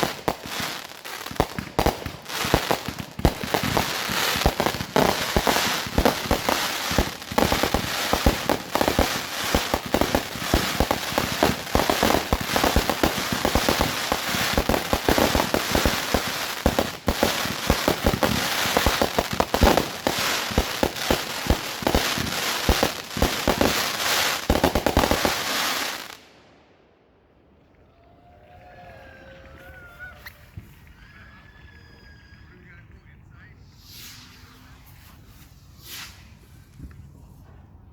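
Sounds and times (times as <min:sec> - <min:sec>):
fireworks bangs and crackling: 0:00.0 - 0:26.4.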